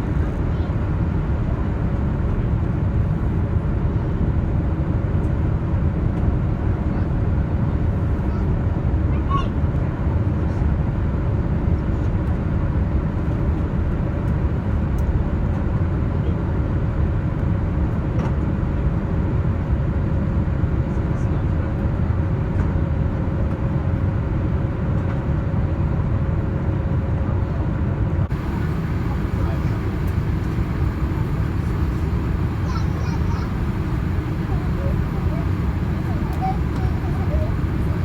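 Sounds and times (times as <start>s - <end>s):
airliner cabin roar: 21.9s - 38.0s
faint steady hum: 28.3s - 38.0s.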